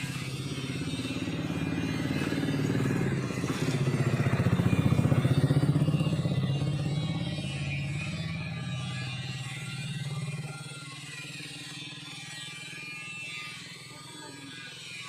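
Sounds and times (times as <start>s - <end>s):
small engine running: 0.0s - 15.0s.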